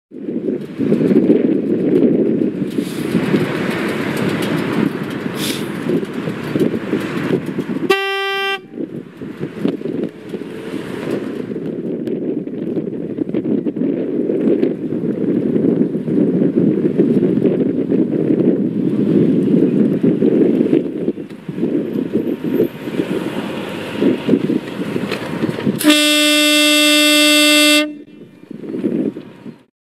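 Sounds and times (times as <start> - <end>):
motorcycle horn blast: 7.8 - 8.8, 25.8 - 28.1.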